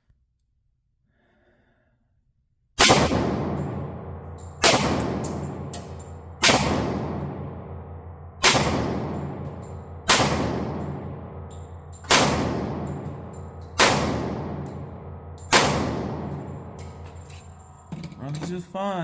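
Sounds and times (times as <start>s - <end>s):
pistol shots with echo: 2.8s - 17.0s.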